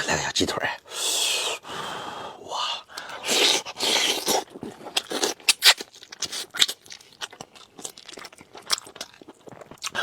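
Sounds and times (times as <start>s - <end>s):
chewing and biting crunches: 3.0s - 10.0s.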